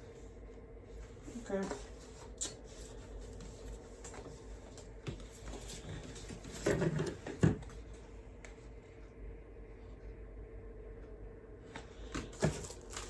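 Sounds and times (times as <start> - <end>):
paper rustling: 12.1 - 13.0.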